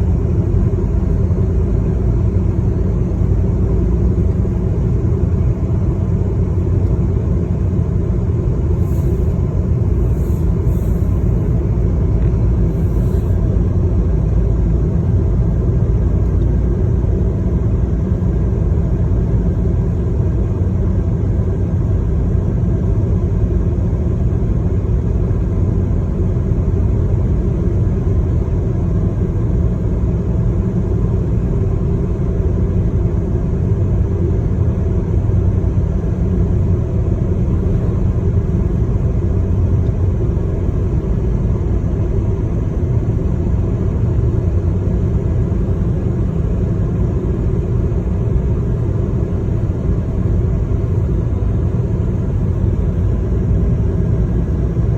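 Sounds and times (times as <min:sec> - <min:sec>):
moving vehicle rumble: 0:00.0 - 0:54.9.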